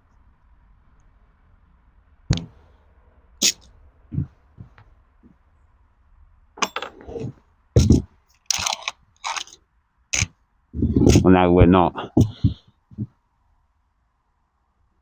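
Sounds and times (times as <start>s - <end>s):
air rifle action clicking: 6.6s - 9.6s.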